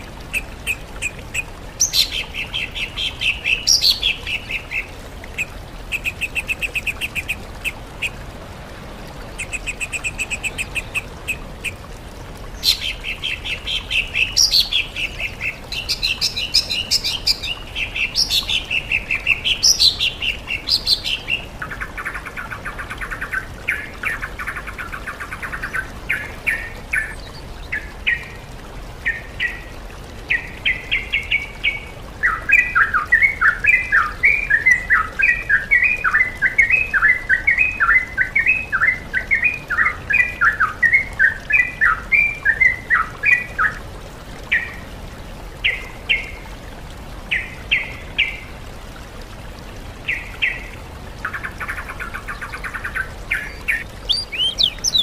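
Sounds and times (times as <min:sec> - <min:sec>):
songbirds singing: 0:00.2 - 0:08.2, 0:09.2 - 0:11.8, 0:12.5 - 0:28.4, 0:50.1 - 0:55.0.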